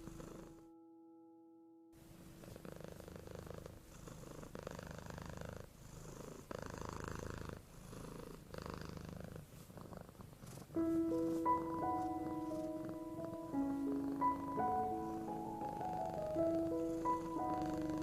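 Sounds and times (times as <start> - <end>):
cat purring: 0.0 - 0.7, 2.1 - 18.0
held musical note: 0.0 - 2.3, 10.8 - 18.0.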